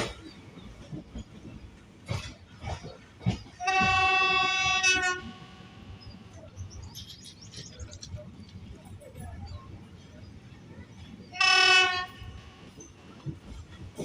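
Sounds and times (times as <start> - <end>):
train horn: 3.6 - 6.1, 11.3 - 12.8.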